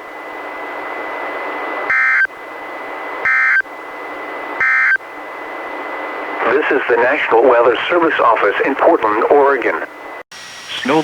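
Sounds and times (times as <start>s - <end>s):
radio hiss: 6.1s - 11.0s.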